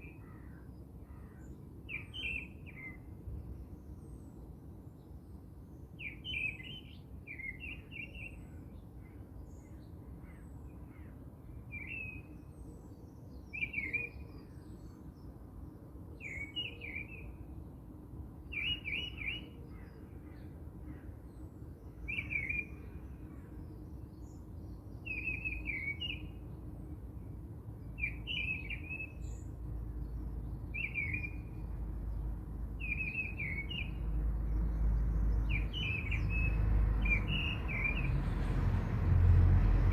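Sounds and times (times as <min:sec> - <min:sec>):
bird chirping: 0:32.8 - 0:38.6.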